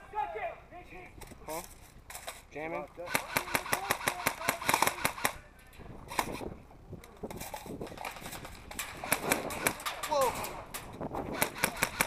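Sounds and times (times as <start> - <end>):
airsoft guns firing: 3.0 - 5.4, 8.0 - 12.0.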